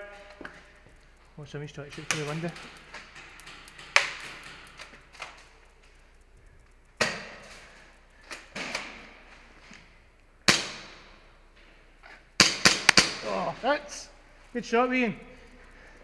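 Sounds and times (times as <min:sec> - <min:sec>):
airsoft gun shots echoing: 0:10.5 - 0:11.3, 0:12.4 - 0:13.3.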